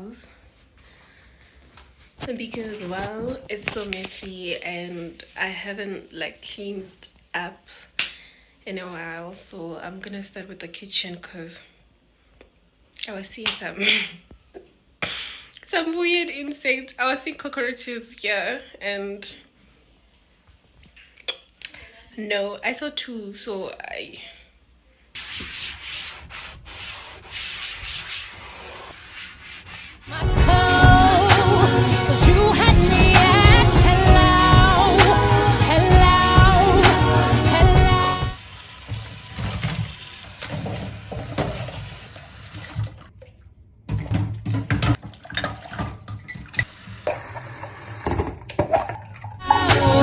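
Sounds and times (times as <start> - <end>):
scrubbing kitchen surface: 25.2 - 31.4
tap water running into sink: 38.4 - 43.1, 43.9 - 49.4.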